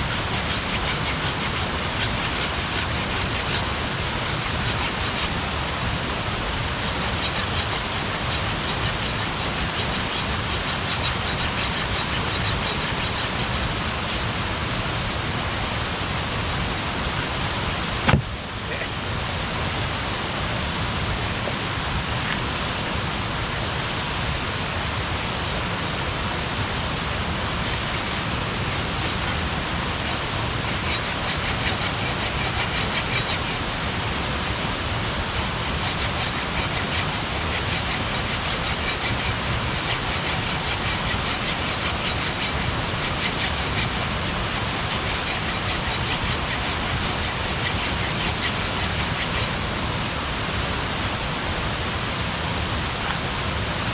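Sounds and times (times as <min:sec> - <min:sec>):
campfire hissing: 0:00.0 - 0:15.0, 0:26.4 - 0:50.3.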